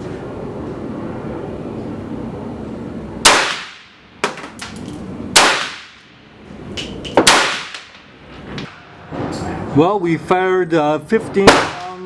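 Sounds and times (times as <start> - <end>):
rifle shots: 3.2 - 4.4, 5.4 - 6.0, 7.2 - 7.9
metallic clinks: 4.5 - 5.3, 6.7 - 7.3.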